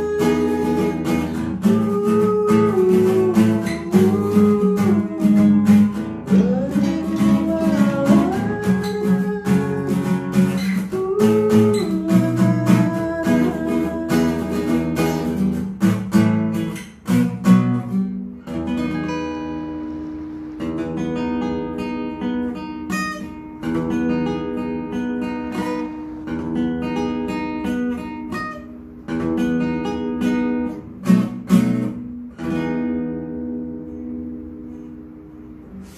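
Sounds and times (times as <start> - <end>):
person singing: 0.0 - 15.6
acoustic guitar strumming: 0.0 - 35.9.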